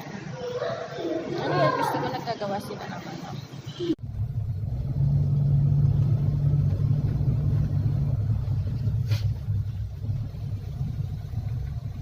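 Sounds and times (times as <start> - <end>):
car interior rumble: 4.0 - 12.0.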